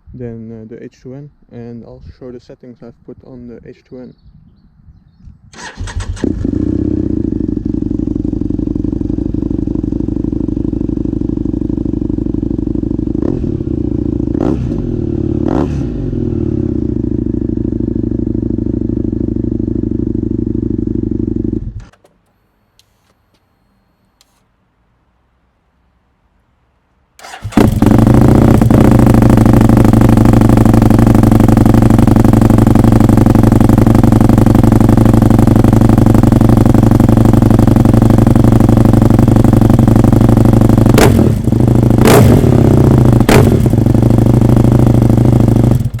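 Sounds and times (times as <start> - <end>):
motorcycle engine idling: 5.6 - 22.2, 27.2 - 46.0
engine throttle blips: 27.2 - 46.0.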